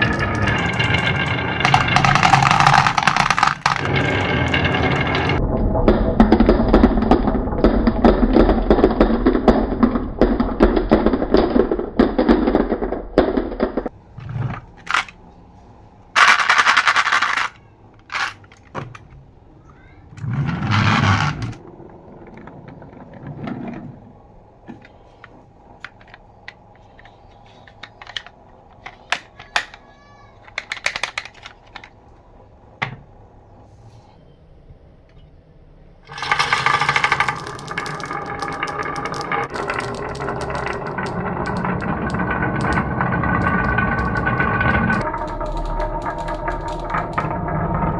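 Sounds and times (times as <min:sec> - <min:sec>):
marbles rattling through marble run: 0:00.0 - 0:05.4, 0:14.6 - 0:15.2, 0:16.2 - 0:19.1, 0:25.0 - 0:32.0, 0:36.1 - 0:47.9.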